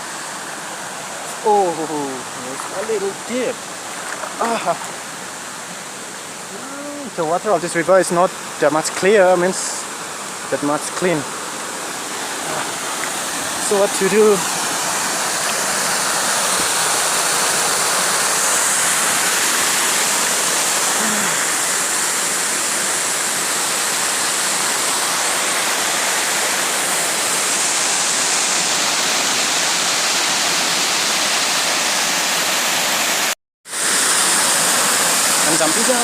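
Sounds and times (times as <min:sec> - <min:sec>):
waterfall roaring: 0:00.0 - 0:36.0.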